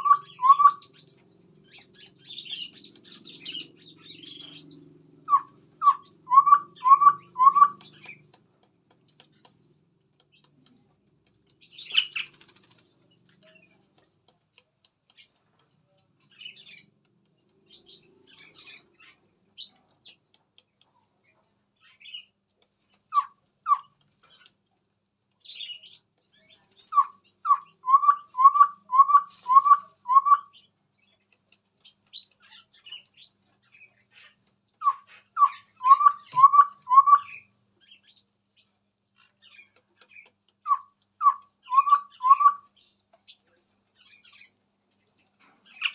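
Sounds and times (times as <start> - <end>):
bird piping notes: 0.0 - 8.2, 26.9 - 30.6, 34.8 - 37.5, 40.6 - 42.8
thin high bird chirps: 0.0 - 8.4, 9.0 - 24.7, 25.4 - 45.9.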